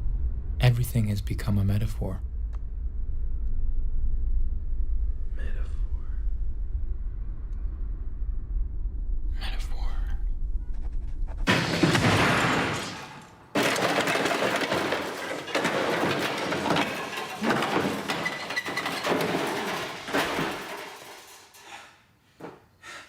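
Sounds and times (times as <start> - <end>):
loud crashing and clattering: 11.5 - 21.8.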